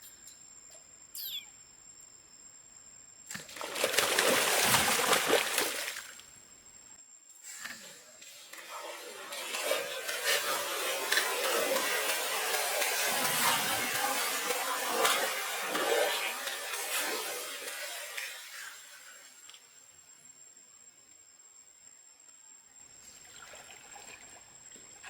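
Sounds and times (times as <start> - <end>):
water splashing and sloshing: 3.3 - 6.4, 7.6 - 19.2, 23.0 - 25.0.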